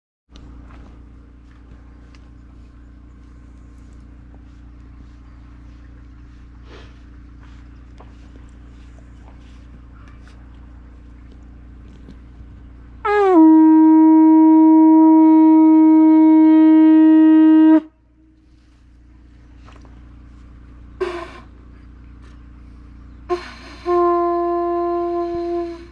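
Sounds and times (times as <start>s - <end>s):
faint outdoor background: 0.3s - 25.9s
conch shell trumpet note: 13.0s - 18.4s, 23.3s - 25.9s.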